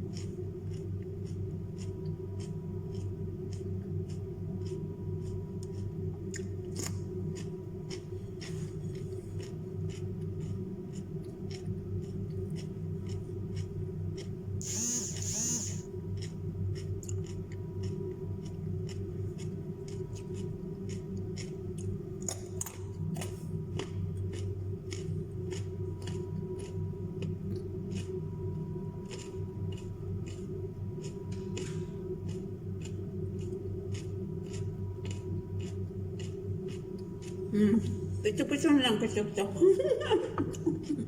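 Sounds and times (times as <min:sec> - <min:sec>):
crunching raw vegetables: 0:00.0 - 0:10.6
steady low hum: 0:00.0 - 0:41.0.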